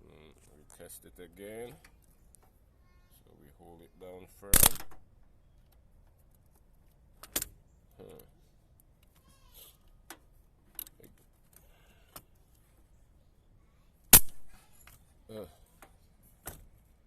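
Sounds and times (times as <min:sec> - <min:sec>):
sharp electrical snaps: 0:04.6 - 0:05.0, 0:14.1 - 0:14.6.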